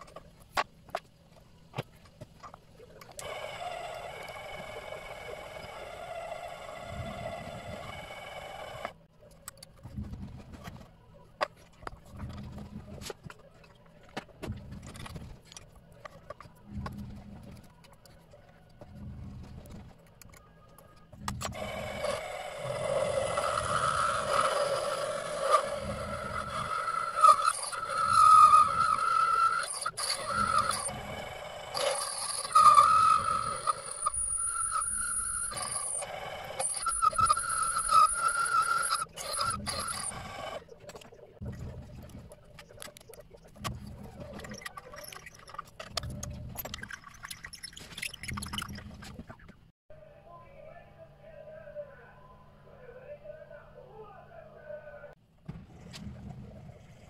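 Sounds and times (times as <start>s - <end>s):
electric motor tool whining: 21.4s - 40.6s.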